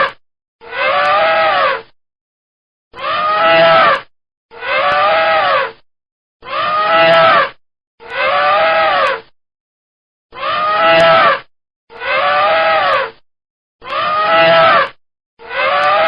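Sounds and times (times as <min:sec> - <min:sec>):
elephant trumpeting: 0:00.7 - 0:01.8, 0:03.0 - 0:05.7, 0:06.4 - 0:07.5, 0:08.1 - 0:09.2, 0:10.4 - 0:11.4, 0:12.0 - 0:13.1, 0:13.8 - 0:14.9, 0:15.5 - 0:16.0.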